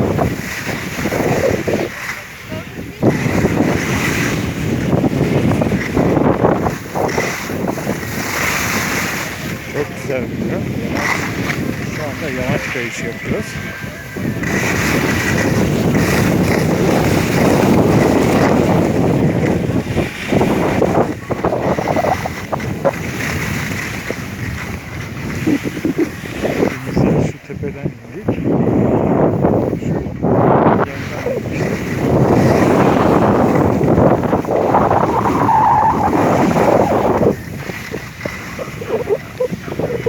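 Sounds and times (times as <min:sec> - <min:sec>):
wind buffeting microphone: 0:00.0 - 0:40.0
skis scraping on snow: 0:03.0 - 0:10.0, 0:10.8 - 0:12.8, 0:14.2 - 0:27.1, 0:30.9 - 0:35.4, 0:36.0 - 0:40.0.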